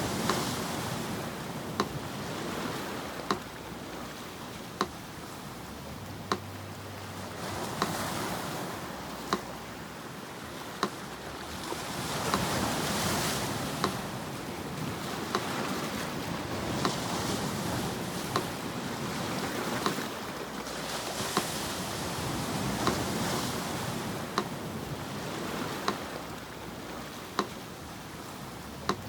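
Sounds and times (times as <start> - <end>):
sea surf washing in: 0.0 - 29.0
metronome ticking: 0.1 - 1.0, 1.6 - 2.2, 3.0 - 5.2, 5.8 - 9.9, 12.3 - 12.7, 24.1 - 24.6, 25.6 - 26.6, 28.8 - 29.0.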